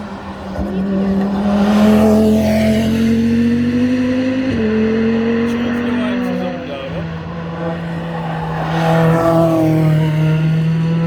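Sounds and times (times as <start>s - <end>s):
race car engine accelerating: 0.0s - 11.0s.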